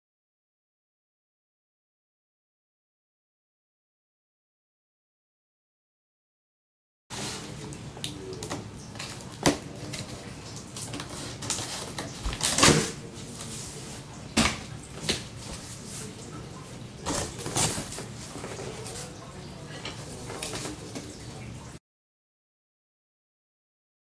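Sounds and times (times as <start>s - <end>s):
packaging knocks and rustles: 17.0s - 18.9s.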